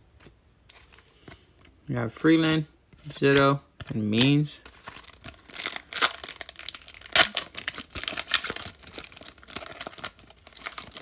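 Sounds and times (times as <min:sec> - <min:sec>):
foil wrapper tearing and crinkling: 0:04.8 - 0:11.0.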